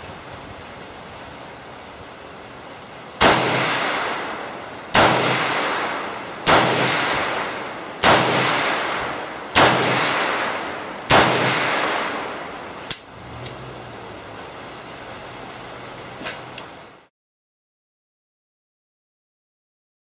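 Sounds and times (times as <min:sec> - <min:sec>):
revolver shots with echo: 0:05.0 - 0:12.4
sharp click: 0:12.9 - 0:13.6.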